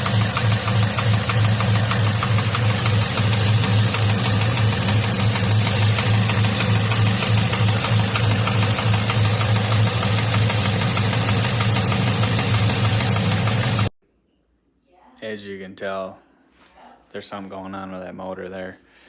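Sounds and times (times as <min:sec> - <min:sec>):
truck engine knocking: 0:00.0 - 0:13.9.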